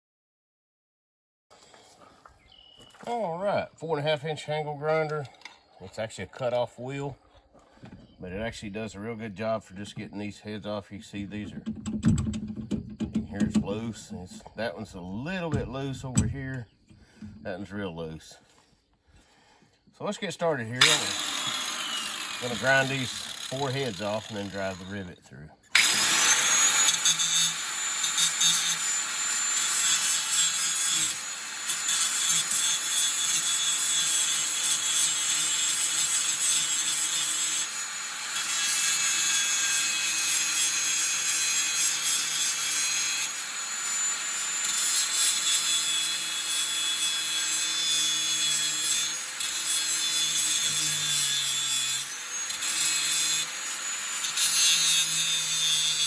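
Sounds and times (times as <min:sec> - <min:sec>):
angle grinder grinding metal: 0:20.0 - 0:56.0.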